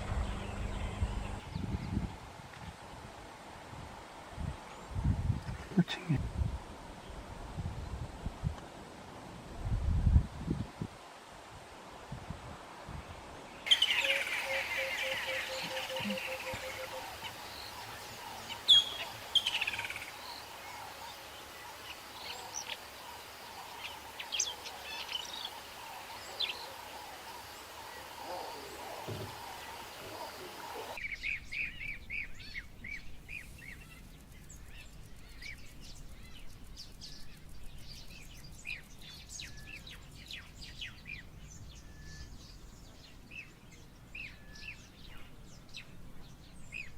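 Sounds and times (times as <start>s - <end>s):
wild birds chirping: 0.0s - 2.1s, 13.5s - 46.9s
steady outdoor hiss: 0.0s - 46.9s.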